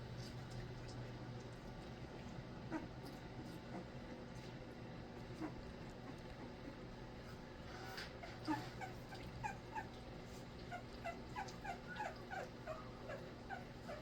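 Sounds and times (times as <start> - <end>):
puppy whimpering: 2.7 - 3.1, 5.3 - 6.8, 7.8 - 14.0.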